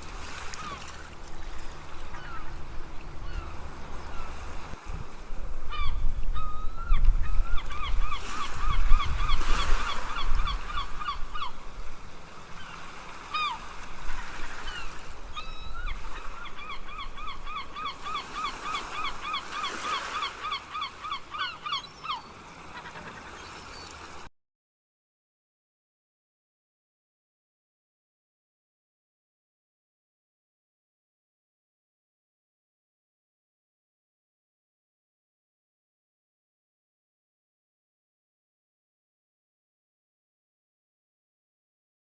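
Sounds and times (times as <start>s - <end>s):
gulls calling: 0.0s - 24.3s.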